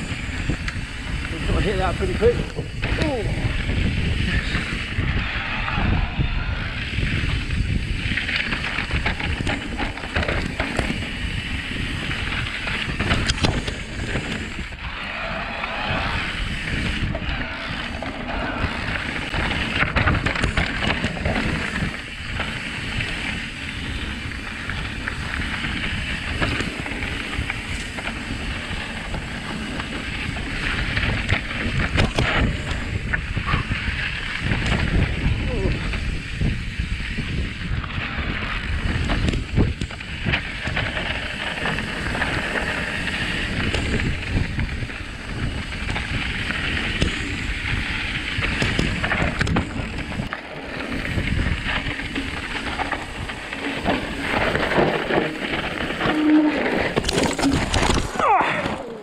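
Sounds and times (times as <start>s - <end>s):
bike tyres rumbling on dirt: 0.0s - 59.0s
wind buffeting microphone: 0.0s - 59.0s
bike knocks and rattles: 7.1s - 14.7s, 16.5s - 59.0s.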